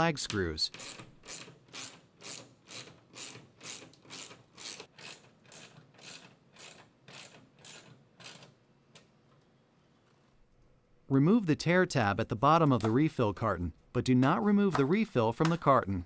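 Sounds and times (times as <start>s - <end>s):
hand tool ratcheting: 0.7s - 8.6s.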